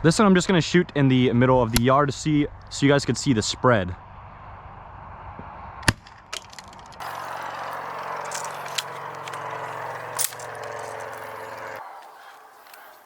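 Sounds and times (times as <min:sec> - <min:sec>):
low hum: 0:07.0 - 0:13.0
scattered ticks: 0:07.0 - 0:13.0.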